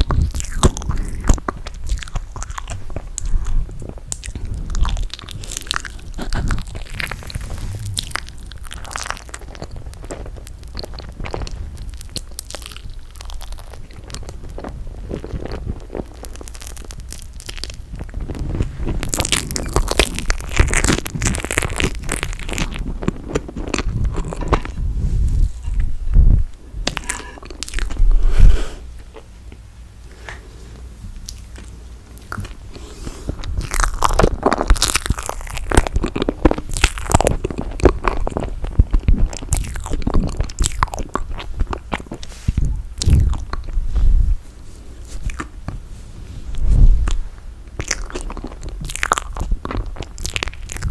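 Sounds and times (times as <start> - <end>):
wet sticky chewing: 0.0 - 24.8, 31.2 - 43.8, 45.1 - 45.8, 47.8 - 50.9
crunching bites: 4.2 - 24.8, 33.4 - 42.2, 47.8 - 50.9.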